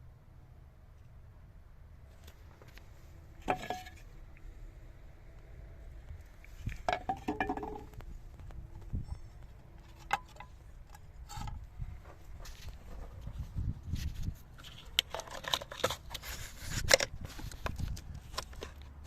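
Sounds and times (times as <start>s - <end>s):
faint steady hum: 0.0s - 19.0s
hard objects clicking and clinking: 6.8s - 8.0s.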